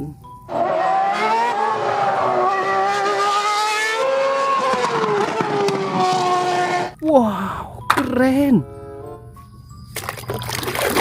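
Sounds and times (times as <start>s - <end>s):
race car engine high note: 0.5s - 7.0s.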